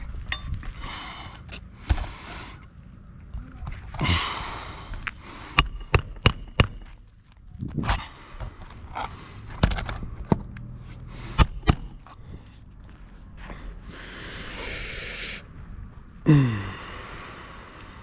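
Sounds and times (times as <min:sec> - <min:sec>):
heavy breathing: 0:00.6 - 0:02.8, 0:03.9 - 0:06.0, 0:07.9 - 0:09.6, 0:10.8 - 0:15.6, 0:16.2 - 0:18.0
hammer driving nails: 0:05.6 - 0:07.0, 0:11.3 - 0:12.0.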